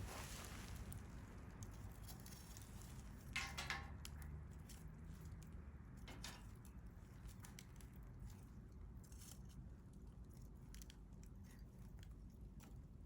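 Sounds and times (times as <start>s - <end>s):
campfire crackling and popping: 0.0s - 1.3s.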